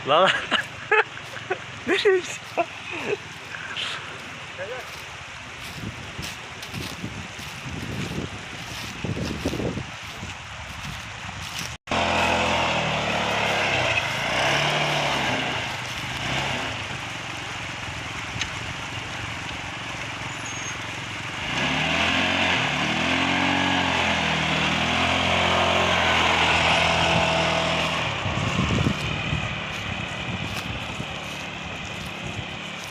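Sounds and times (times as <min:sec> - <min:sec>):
atv engine revving: 0:11.9 - 0:32.9.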